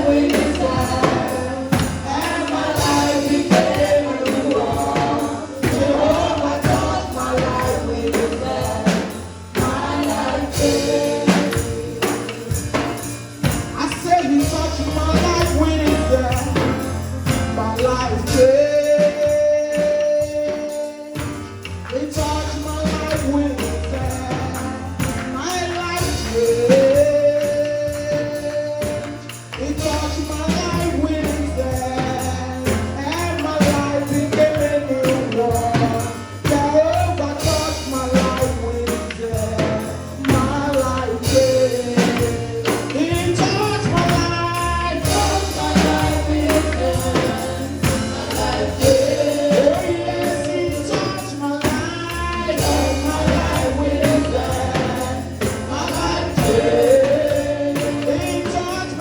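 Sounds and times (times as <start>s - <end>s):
choir singing: 0.0s - 12.3s, 45.0s - 51.0s, 52.4s - 59.0s
tambourine: 0.0s - 59.0s.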